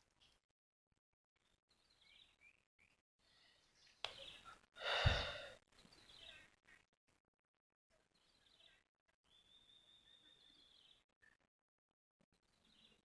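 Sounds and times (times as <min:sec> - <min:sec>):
loud breathy exhale: 0:04.8 - 0:05.6
faint bird chirps: 0:08.2 - 0:11.0.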